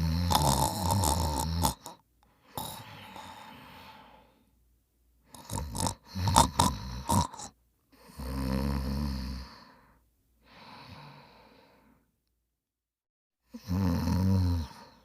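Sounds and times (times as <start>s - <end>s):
sputtering snorts: 0.0s - 2.0s, 5.3s - 7.5s
person snoring: 0.0s - 4.4s, 5.3s - 9.9s, 13.5s - 15.0s
breathy out-breath: 1.0s - 4.6s, 9.3s - 12.1s.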